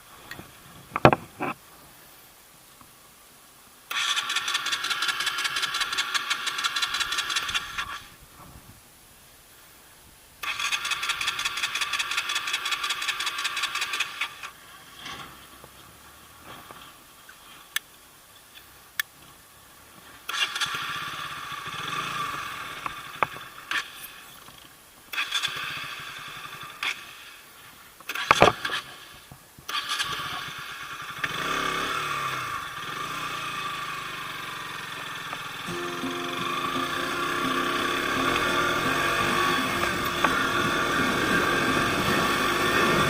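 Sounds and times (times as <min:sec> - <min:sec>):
motorcycle starter cranking: 0:03.9 - 0:07.9, 0:29.7 - 0:30.3.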